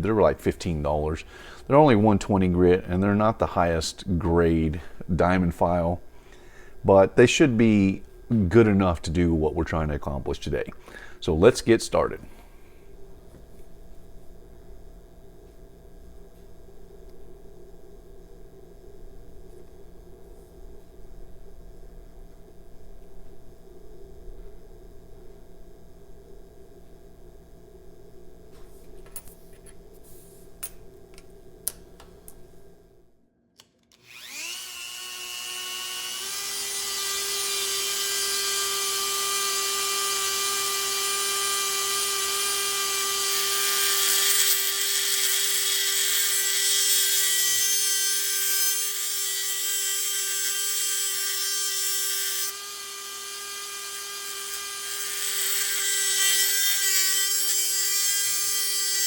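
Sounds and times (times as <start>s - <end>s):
rotary tool grinding steel: 34.0s - 59.0s.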